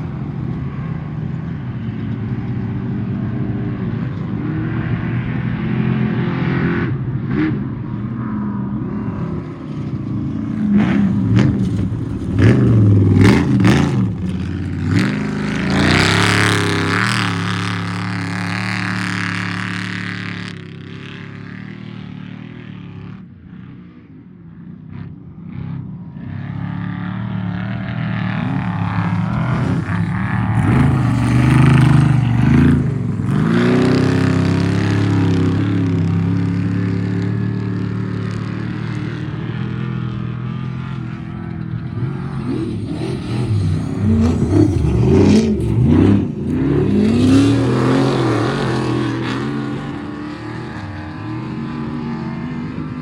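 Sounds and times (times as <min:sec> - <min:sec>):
truck engine revving: 0:10.6 - 0:20.6, 0:27.5 - 0:52.1.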